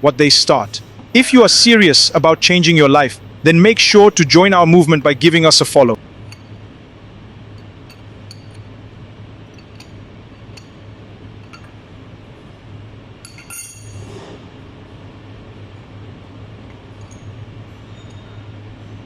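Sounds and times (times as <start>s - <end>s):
shop machinery hum: 0.0s - 19.0s
light metallic clinks: 6.2s - 6.6s, 7.5s - 8.7s, 9.5s - 11.8s, 13.2s - 14.1s, 16.7s - 18.6s
ringing metal clatter: 13.2s - 14.1s.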